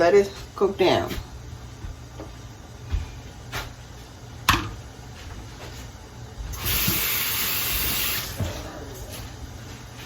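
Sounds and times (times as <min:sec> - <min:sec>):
tap water running: 0:06.5 - 0:08.5.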